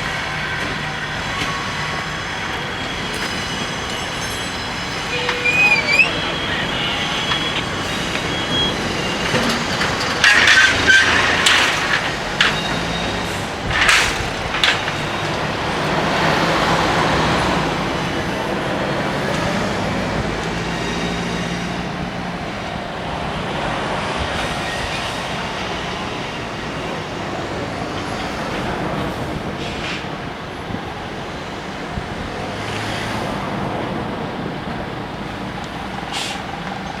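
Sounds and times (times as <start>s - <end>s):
freight train rumble: 0.0s - 37.0s
sharp clanks and knocks: 0.6s - 16.9s.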